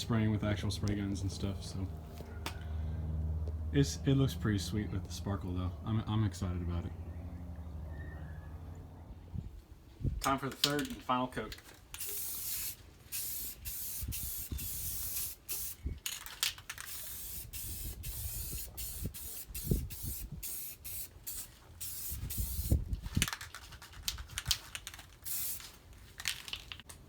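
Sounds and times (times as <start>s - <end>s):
aerosol spray can hissing: 12.0s - 15.8s, 16.9s - 22.8s, 25.2s - 25.7s.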